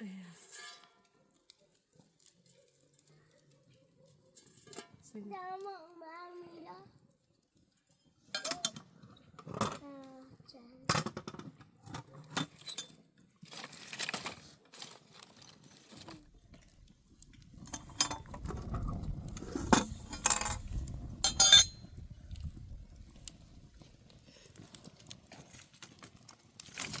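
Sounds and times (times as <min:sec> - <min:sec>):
low rumble: 0:17.6 - 0:23.8
hard objects clinking and knocking: 0:19.3 - 0:21.9.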